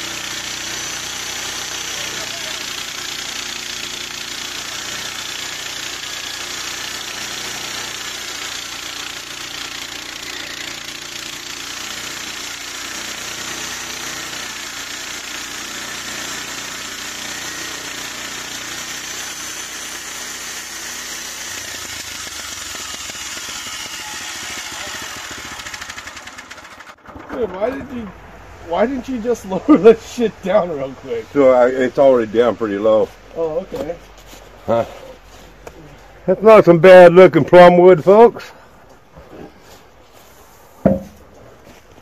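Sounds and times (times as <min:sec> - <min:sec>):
band blade cutting log: 0:00.0 - 0:26.9
gas engine running: 0:21.8 - 0:27.4.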